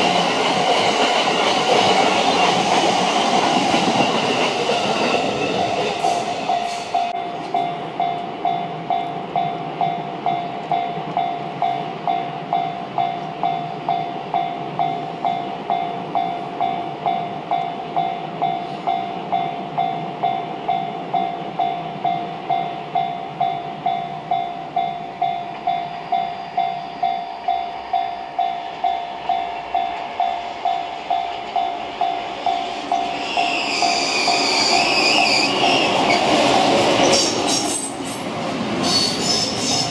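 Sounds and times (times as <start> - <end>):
train wheels squealing: 0.0 - 7.1, 25.7 - 28.4, 32.4 - 36.3, 37.0 - 39.9
level-crossing warning bell: 0.0 - 38.0
passing train: 0.0 - 39.9.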